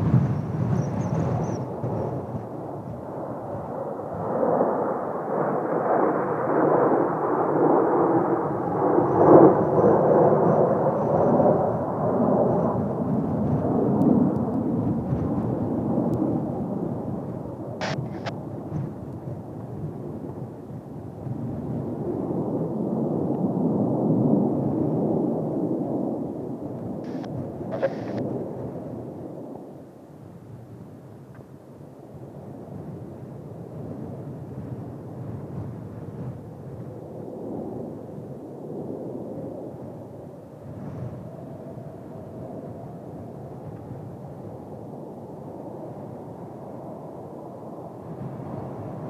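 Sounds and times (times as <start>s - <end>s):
jet aircraft roar: 0.0s - 30.4s, 31.9s - 49.0s
gusty wind: 0.0s - 49.0s
high turbine whine: 17.8s - 18.3s, 27.1s - 28.8s.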